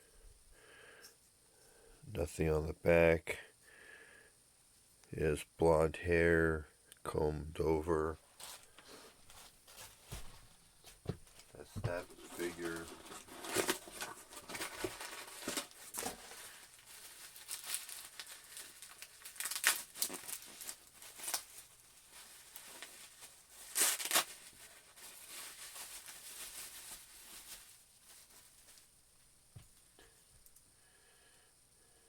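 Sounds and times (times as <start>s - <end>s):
plastic and cardboard crinkling: 8.3s - 28.9s.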